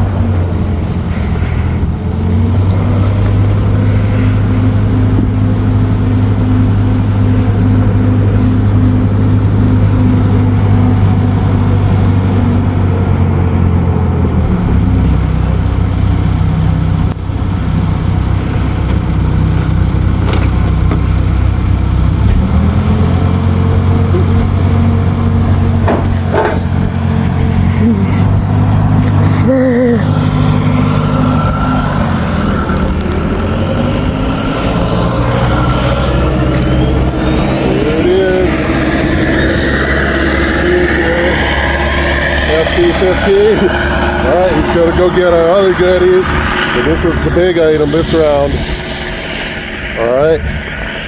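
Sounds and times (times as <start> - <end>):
forklift engine under load: 0.0 - 51.0
metal clanks: 16.2 - 29.4.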